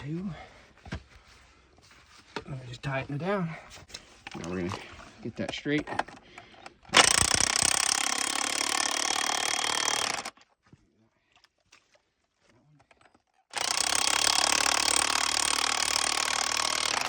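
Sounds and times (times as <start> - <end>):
impact wrench hammering: 6.9 - 10.3, 13.6 - 17.0.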